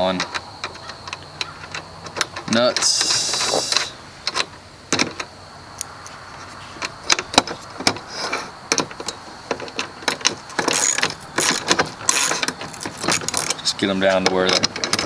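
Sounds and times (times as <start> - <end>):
metal hardware clicking and clinking: 9.0 - 15.0
rasping scrape: 10.6 - 13.6.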